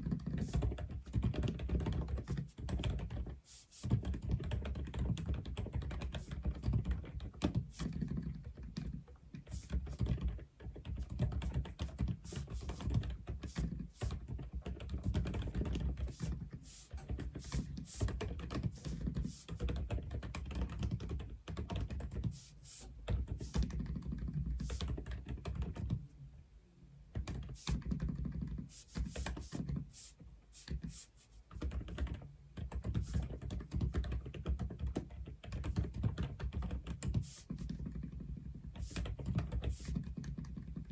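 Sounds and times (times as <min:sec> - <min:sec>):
fast typing on mechanical keyboard: 0:00.0 - 0:26.0, 0:27.2 - 0:29.8, 0:31.5 - 0:40.9.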